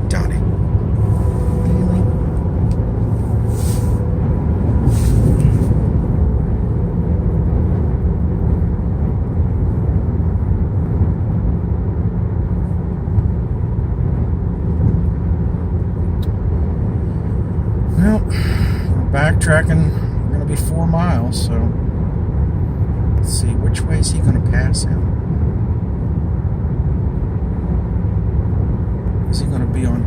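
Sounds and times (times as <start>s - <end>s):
road and engine rumble: 0.0s - 30.0s
passing air hissing: 3.0s - 5.8s.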